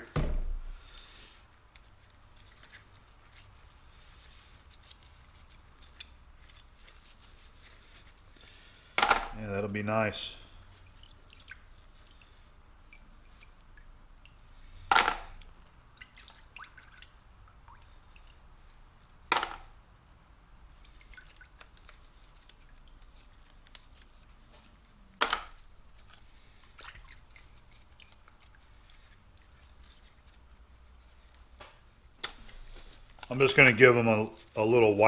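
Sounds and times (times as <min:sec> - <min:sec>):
small ticks and drips: 0:10.4 - 0:19.2, 0:20.4 - 0:24.8, 0:25.6 - 0:31.6.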